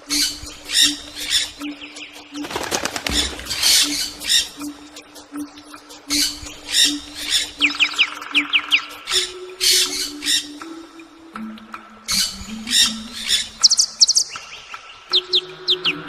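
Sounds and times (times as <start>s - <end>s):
birds squawking: 0.0s - 10.7s
sharp falling bird chirps: 2.4s - 4.5s.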